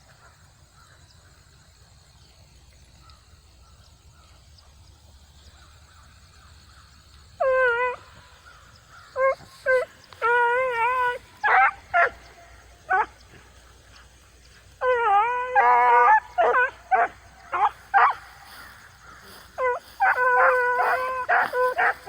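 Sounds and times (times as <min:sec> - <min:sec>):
dogs baying: 0:07.4 - 0:08.1, 0:09.2 - 0:22.0
dogs barking sharply: 0:16.1 - 0:22.0.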